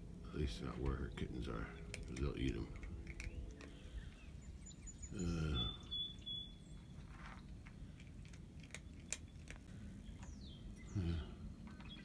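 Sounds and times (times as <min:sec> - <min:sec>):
cat crunching dry food: 0:01.7 - 0:04.2, 0:07.0 - 0:10.3.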